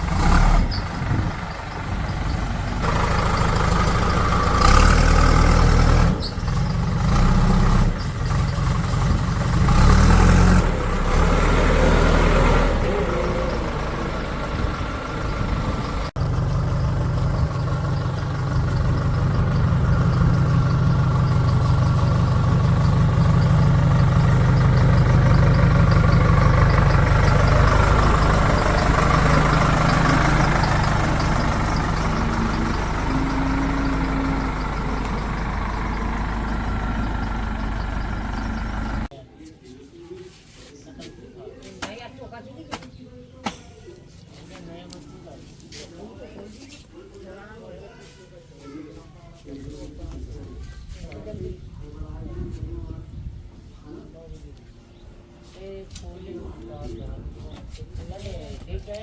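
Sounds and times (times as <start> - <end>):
diesel engines revving: 0.0 - 39.1.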